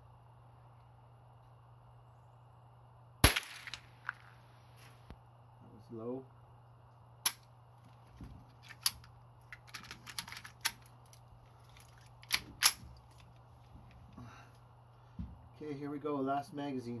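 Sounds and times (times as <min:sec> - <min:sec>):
rifle shots cracking: 0:03.2 - 0:04.2.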